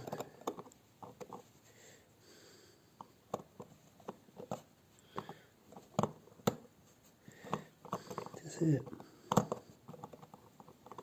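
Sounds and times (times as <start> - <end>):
hand tools clicking on watch movement: 7.3 - 11.0.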